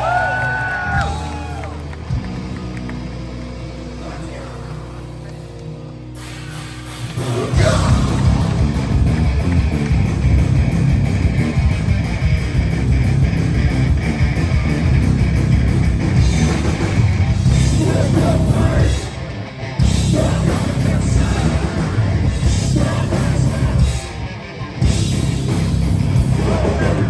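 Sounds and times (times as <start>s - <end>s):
drum kit: 0.0s - 4.0s, 5.3s - 27.0s
distorted electric guitars: 0.0s - 27.0s
live heavy metal band: 0.0s - 27.0s.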